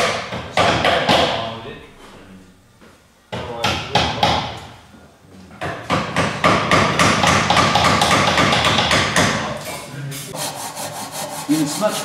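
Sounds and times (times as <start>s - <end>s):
knock on wood: 0.0s - 1.4s, 5.6s - 9.4s
hand tool strokes on wood: 10.2s - 12.0s.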